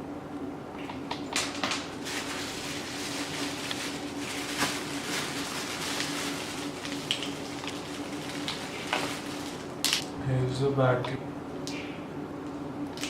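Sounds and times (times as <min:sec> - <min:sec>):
rustling from unpacking: 0:01.8 - 0:09.7.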